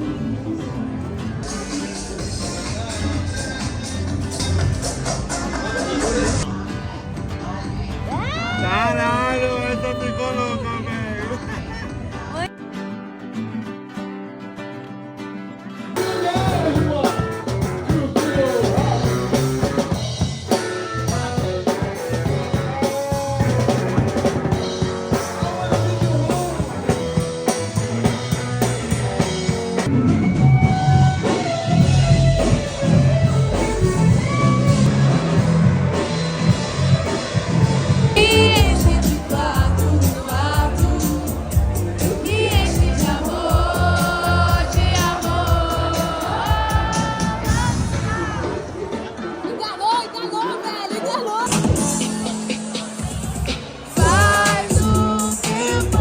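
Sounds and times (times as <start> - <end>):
rock drum kit: 16.0 - 49.5, 51.5 - 56.0
person singing: 38.2 - 48.2, 54.0 - 56.0.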